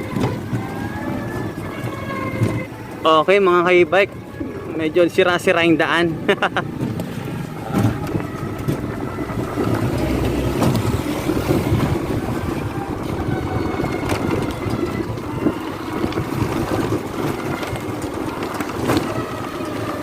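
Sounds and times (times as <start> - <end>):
steady rumble: 0.0 - 20.0
wind buffeting microphone: 0.0 - 20.0
bike body rattling and knocking: 6.2 - 20.0.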